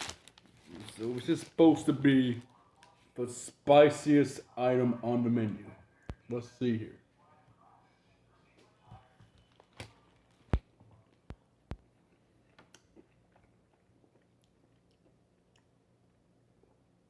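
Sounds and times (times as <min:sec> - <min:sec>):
person chewing: 0:11.8 - 0:15.8.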